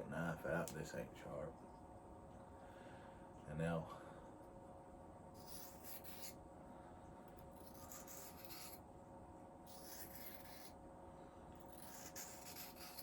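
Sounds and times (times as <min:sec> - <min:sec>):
knife stroked on sharpening stone: 0:05.4 - 0:06.4, 0:07.6 - 0:08.8, 0:09.7 - 0:10.7, 0:11.7 - 0:13.0.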